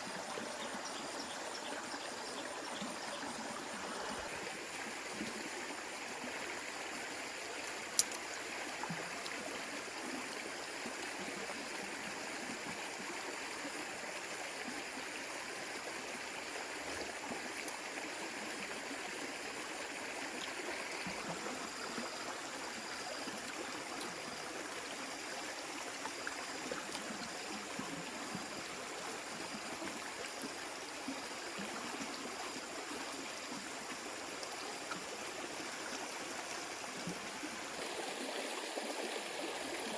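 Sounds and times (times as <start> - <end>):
stream water running: 0.0 - 39.9
sharp click: 8.0 - 8.2.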